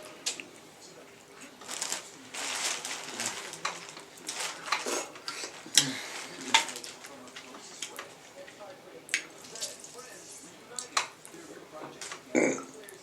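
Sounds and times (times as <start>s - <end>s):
dishes and utensils clinking: 3.2s - 8.2s
crab shells rustling and cracking: 9.2s - 10.1s.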